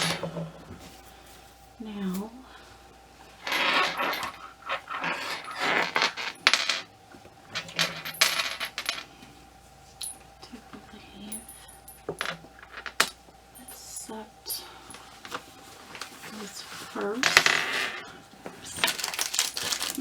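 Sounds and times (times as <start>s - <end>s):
rustling handling noise: 11.4s - 20.0s.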